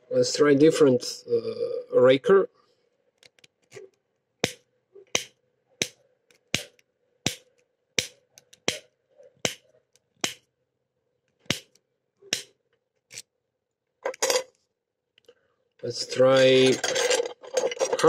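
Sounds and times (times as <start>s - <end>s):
lock pick clicking in padlock: 3.2s - 3.9s.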